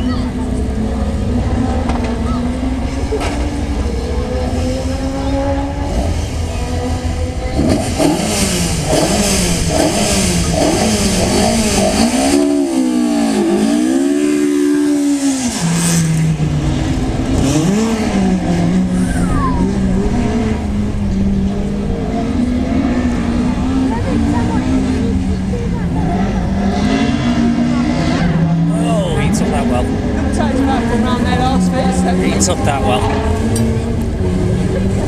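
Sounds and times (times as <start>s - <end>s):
rally car engine revving: 0.0s - 35.0s
car engine idling: 27.6s - 35.0s.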